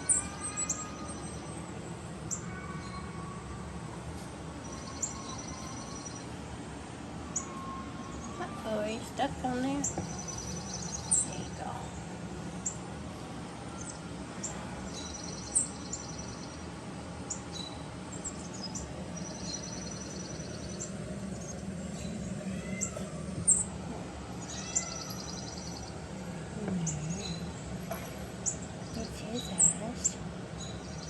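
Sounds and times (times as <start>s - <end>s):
buzzy bird trills: 0.0s - 3.4s, 4.6s - 6.4s, 7.2s - 9.0s, 9.7s - 12.0s, 13.6s - 26.2s
birds chirping: 0.0s - 31.0s
steady low hum: 0.0s - 31.0s.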